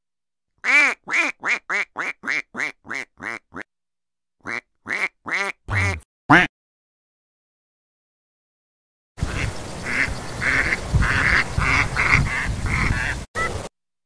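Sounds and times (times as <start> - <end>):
duck quacking: 0.6 - 3.6, 4.4 - 6.5, 9.3 - 13.2.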